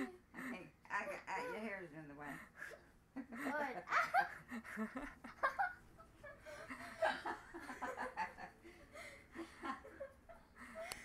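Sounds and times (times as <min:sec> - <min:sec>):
child giggling: 0:03.2 - 0:08.6.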